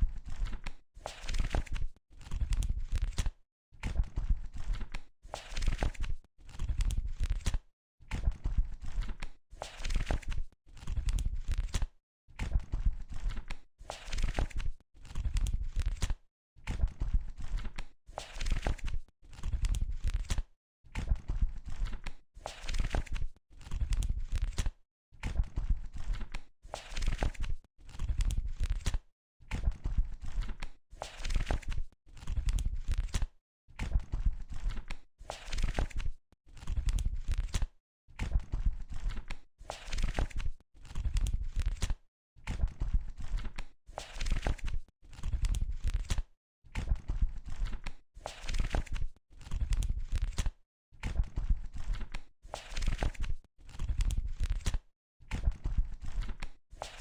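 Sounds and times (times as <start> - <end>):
book pages turning: 0.4 - 2.4, 5.4 - 6.6, 9.7 - 10.9, 14.0 - 15.2, 21.8 - 23.8, 26.0 - 28.0, 30.3 - 32.3, 35.4 - 37.6, 39.0 - 41.9, 43.3 - 46.2, 47.6 - 50.5, 51.8 - 54.8.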